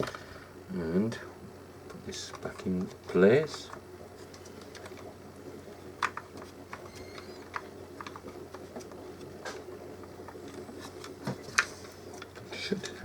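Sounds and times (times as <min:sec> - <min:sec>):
steady low hum: 0:00.0 - 0:13.0
plastic clicks and taps: 0:06.0 - 0:08.6.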